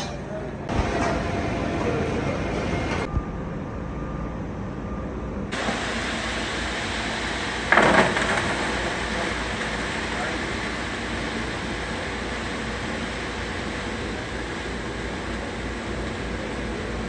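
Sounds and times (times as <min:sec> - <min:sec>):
heavy engine rumbling: 0:00.0 - 0:17.0
loud hissing burst: 0:05.6 - 0:17.0.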